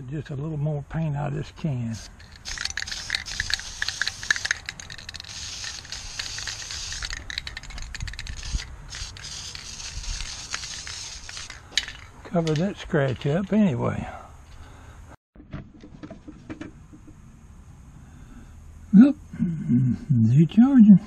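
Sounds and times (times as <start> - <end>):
spray paint can hissing: 2.0 - 12.1.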